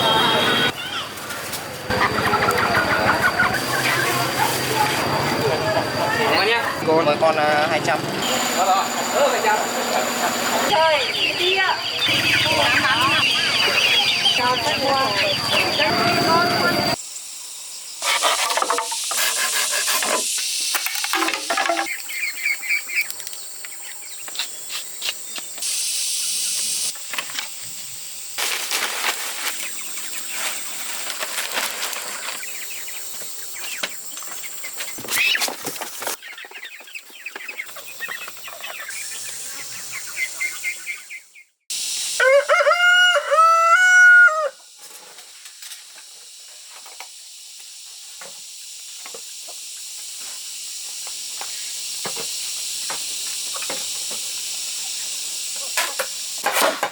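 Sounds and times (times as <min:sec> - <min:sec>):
rooster crowing: 0:42.2 - 0:44.7.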